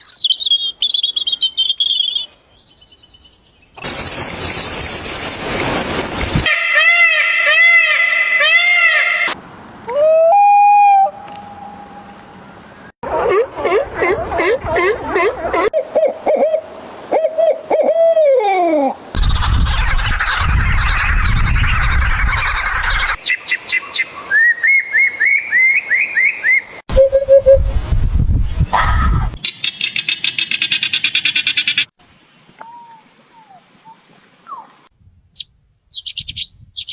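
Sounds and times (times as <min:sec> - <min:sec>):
bird chirping trill: 0:00.0 - 0:06.5, 0:19.2 - 0:26.4, 0:29.4 - 0:31.9, 0:32.7 - 0:36.9
rising-and-falling bird call: 0:06.4 - 0:12.0, 0:15.7 - 0:27.6
chatter of many birds: 0:19.2 - 0:24.3.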